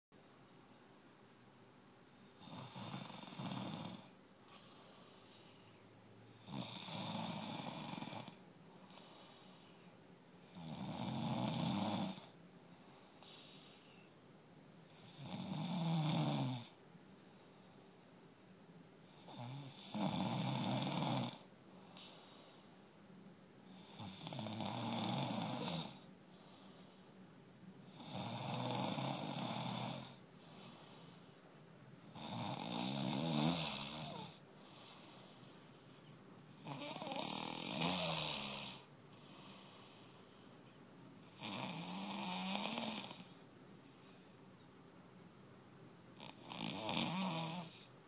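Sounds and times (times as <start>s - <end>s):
rasping snores: 2.4s - 4.7s, 6.4s - 9.5s, 10.4s - 12.4s, 14.9s - 16.8s, 19.1s - 22.3s, 23.7s - 26.1s, 27.9s - 31.1s, 32.0s - 35.4s, 36.6s - 40.0s, 41.3s - 43.4s, 46.2s - 47.9s.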